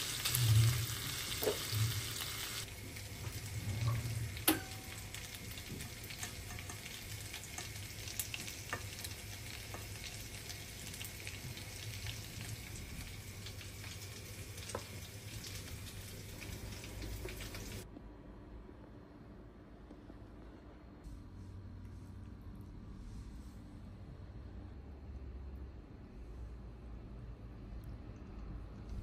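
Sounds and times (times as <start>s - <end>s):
food sizzling in frying pan: 0.0s - 17.8s.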